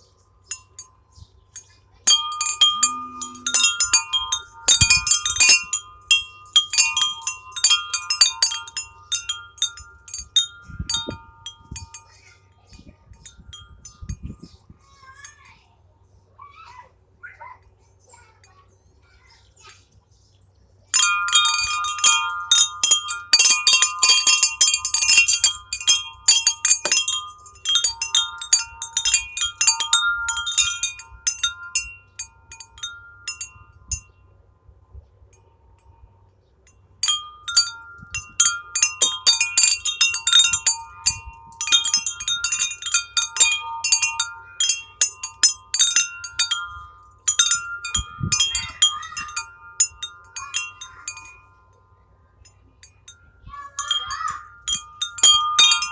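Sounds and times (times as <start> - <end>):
chime ringing: 2.1 - 12.1, 21.0 - 34.0, 37.1 - 51.8, 53.5 - 55.9.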